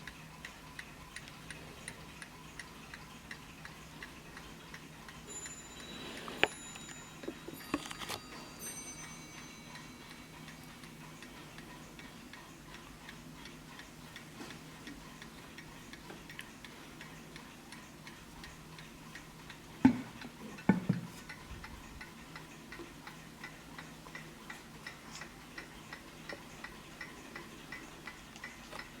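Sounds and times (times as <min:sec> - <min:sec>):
clock ticking: 0:00.0 - 0:29.0
clock chime bell ringing: 0:05.3 - 0:11.3.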